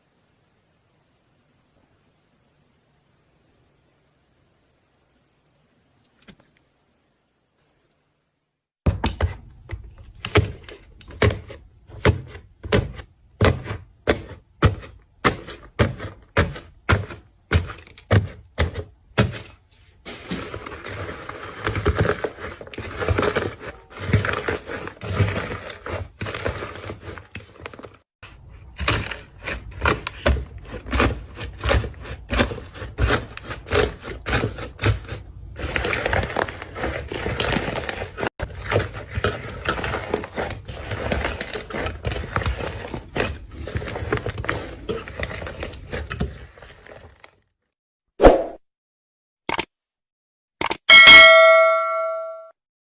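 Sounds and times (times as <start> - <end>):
slime squishing: 28.3 - 47.3.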